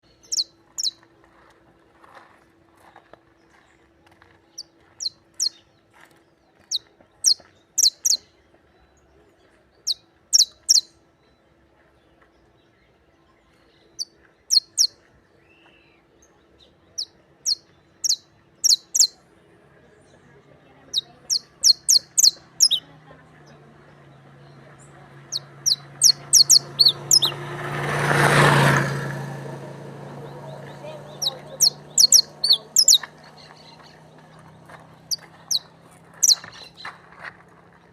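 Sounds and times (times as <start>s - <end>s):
canary chirping: 0.0s - 1.1s, 4.5s - 5.7s, 6.6s - 8.4s, 9.8s - 11.4s, 13.7s - 15.1s, 16.8s - 19.2s, 20.8s - 23.6s, 24.3s - 27.6s, 30.1s - 37.0s.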